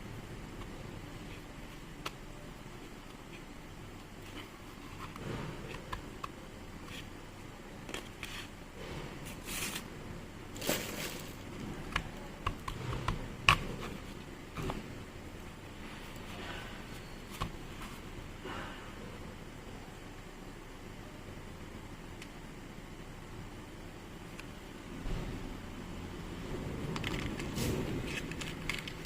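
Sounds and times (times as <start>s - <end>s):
small parts clicking and tapping: 26.8s - 29.0s.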